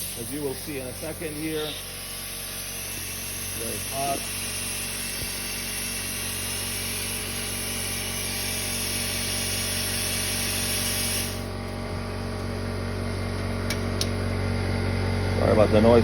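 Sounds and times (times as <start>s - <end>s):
plasma cutter arc hissing: 0.0s - 11.7s
air compressor humming: 0.0s - 16.0s.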